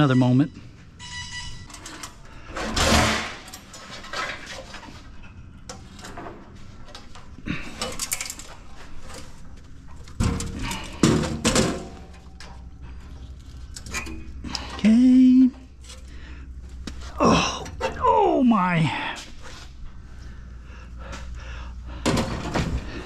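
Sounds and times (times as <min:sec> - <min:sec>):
metal rack parts clanking: 0:01.2 - 0:14.8, 0:17.0 - 0:18.2.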